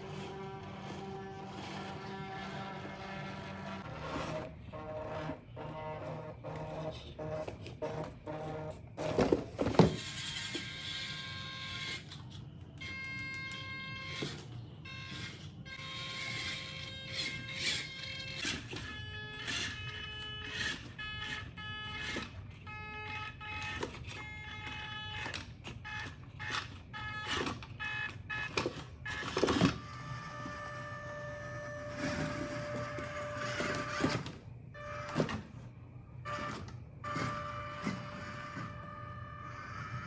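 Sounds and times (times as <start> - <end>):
electric motor whining: 0.0 - 12.2, 12.8 - 40.0.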